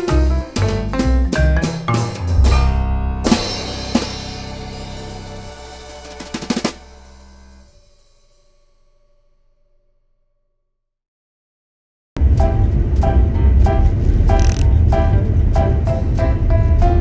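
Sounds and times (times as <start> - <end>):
band music with drums: 0.0 - 7.6
drum hits: 0.0 - 7.8.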